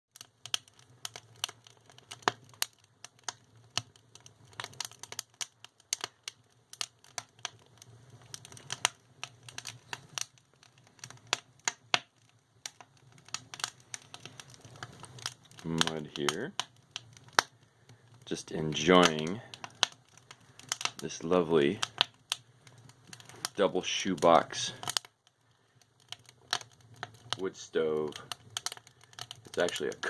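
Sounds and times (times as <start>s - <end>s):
wood fire crackling: 0.1s - 30.0s.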